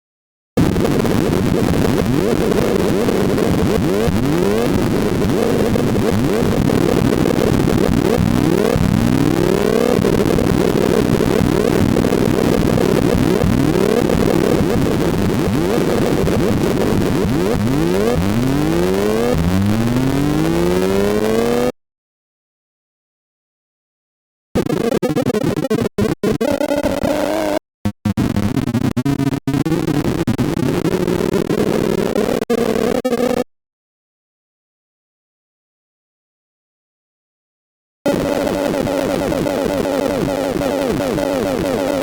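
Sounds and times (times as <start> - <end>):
rapid synth pulses: 2.9 - 21.7
rising synth pitch sweeps: 17.4 - 21.7.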